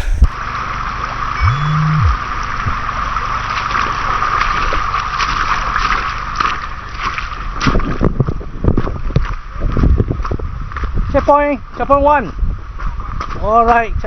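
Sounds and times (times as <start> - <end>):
low tone rising and falling: 1.4 - 2.2.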